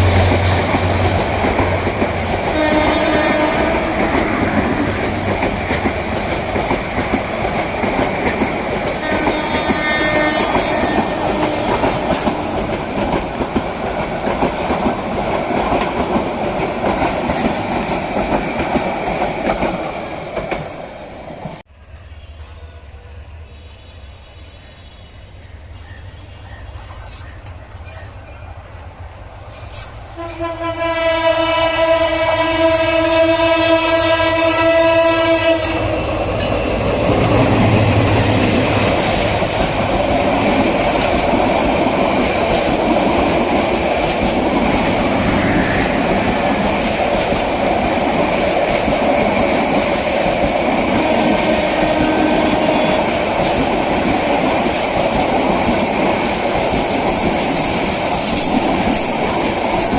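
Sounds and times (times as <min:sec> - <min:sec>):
train passing rumble and clatter: 0:00.0 - 0:59.9
locomotive horn blast: 0:02.4 - 0:04.8, 0:09.0 - 0:12.1, 0:30.2 - 0:36.1, 0:51.0 - 0:53.3.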